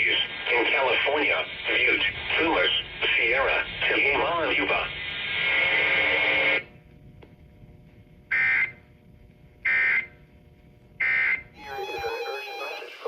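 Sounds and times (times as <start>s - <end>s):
automated radio voice: 0.0s - 5.0s, 11.6s - 13.0s.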